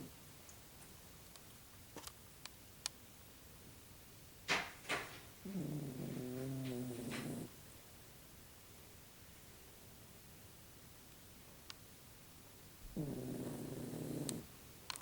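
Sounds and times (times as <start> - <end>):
dog snoring: 5.4 - 7.5, 12.9 - 14.5.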